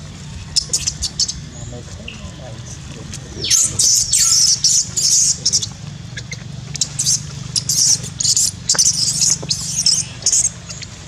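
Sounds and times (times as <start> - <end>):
low steady hum: 0.0 - 11.0
baby monkey crying in shrill squeals: 3.4 - 5.7, 6.9 - 10.5.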